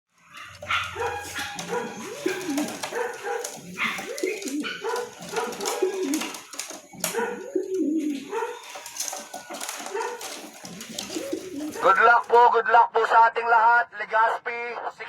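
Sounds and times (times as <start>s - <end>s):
pigeons cooing: 0.1s - 12.1s.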